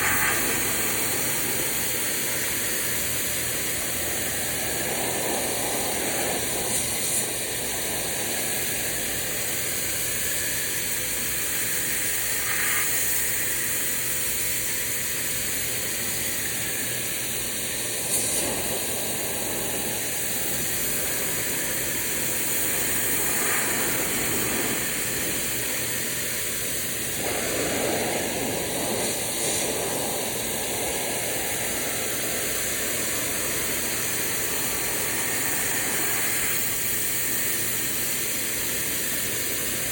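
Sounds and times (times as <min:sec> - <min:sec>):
pressure washer jet hissing: 0:00.0 - 0:39.9.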